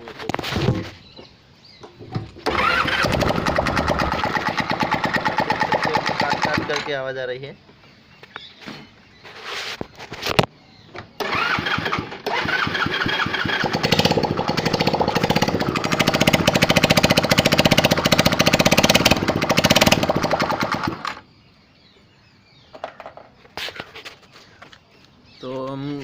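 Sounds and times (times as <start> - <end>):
scooter engine clattering: 2.2 - 7.0, 11.2 - 21.2.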